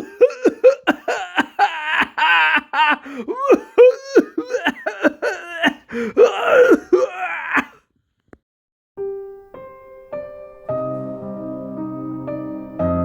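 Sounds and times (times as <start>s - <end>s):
man coughing and laughing: 0.0s - 7.8s.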